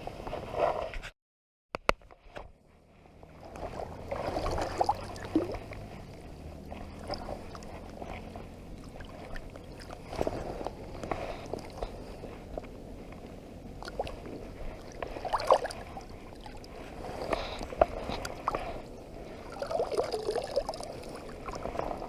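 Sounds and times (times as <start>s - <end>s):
water sloshing and splashing: 3.2s - 12.7s, 13.6s - 22.0s.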